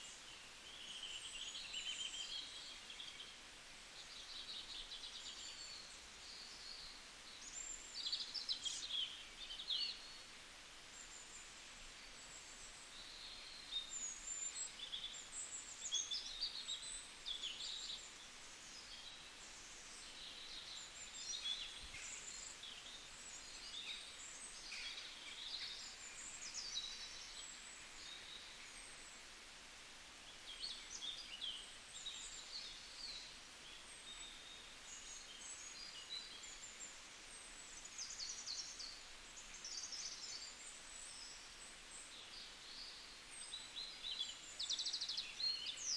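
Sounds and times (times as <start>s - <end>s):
small birds chirping: 0.0s - 45.9s
steady outdoor hiss: 0.0s - 45.9s.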